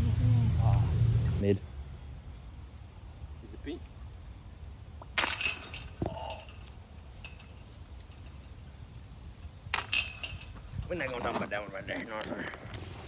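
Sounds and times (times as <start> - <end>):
chains rattling: 5.2 - 8.6, 9.7 - 11.2
disc hitting metal chains: 5.2 - 8.6, 9.7 - 11.0.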